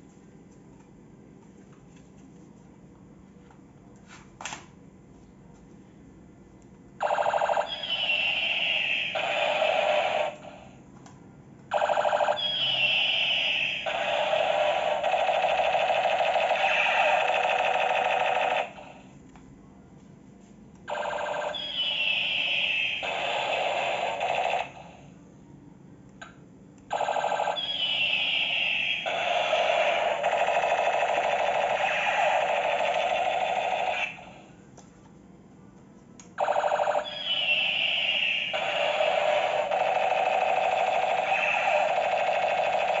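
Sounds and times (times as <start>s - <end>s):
toy gun electronic sound effect: 7.0s - 10.6s, 11.7s - 18.9s, 20.9s - 24.8s, 26.9s - 34.4s, 36.4s - 43.0s.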